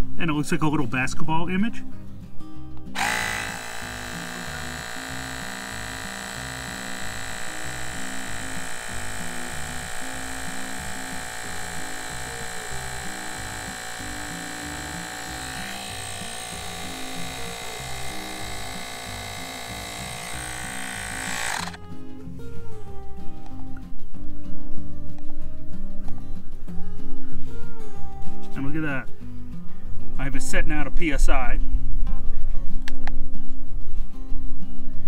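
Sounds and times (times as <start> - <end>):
air compressor motor whine: 3.0 - 21.9.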